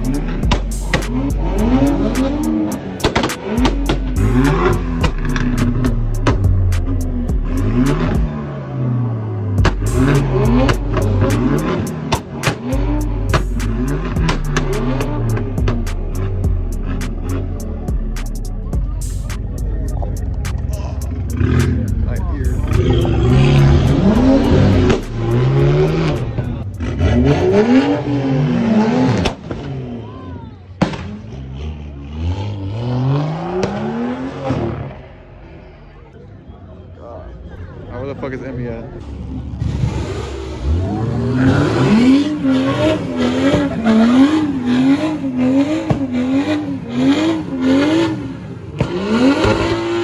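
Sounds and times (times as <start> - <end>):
car engine revving hard: 0.0 - 30.0, 31.0 - 35.2, 39.3 - 50.0
sharp crack: 0.4 - 1.3, 3.0 - 4.2, 30.8 - 31.4.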